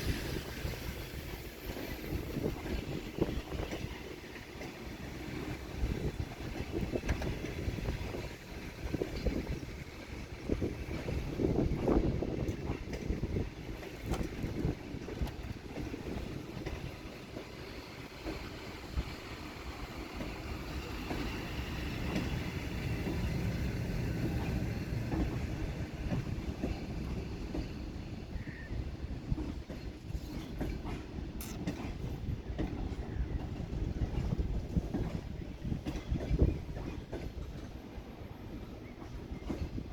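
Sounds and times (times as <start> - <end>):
train cars rumbling past: 0.0 - 39.9
wheels clicking over rail joints: 29.3 - 37.9.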